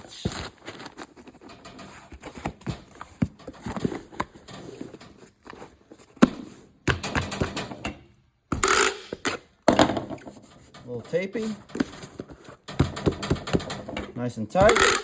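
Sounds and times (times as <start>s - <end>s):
packing paper rustling: 0.0s - 6.1s.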